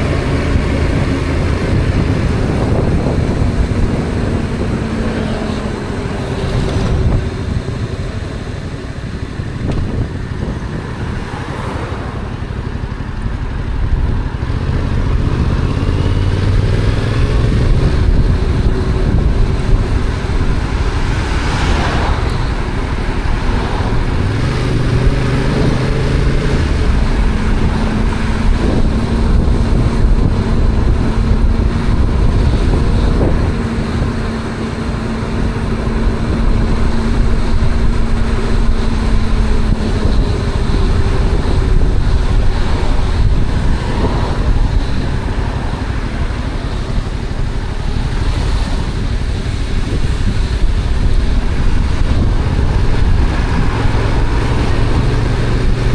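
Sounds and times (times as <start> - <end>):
motorcycle engine accelerating: 0.0 - 55.9
wind buffeting microphone: 0.0 - 55.9.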